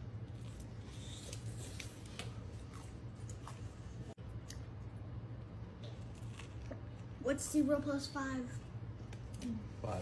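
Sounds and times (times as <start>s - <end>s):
steady low hum: 0.0s - 10.0s
crunchy chewing: 5.8s - 7.1s.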